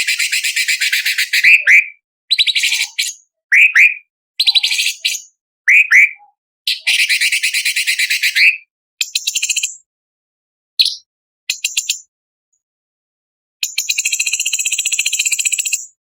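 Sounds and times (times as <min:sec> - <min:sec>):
bird singing harsh rattle: 0:00.0 - 0:06.0, 0:13.6 - 0:16.0.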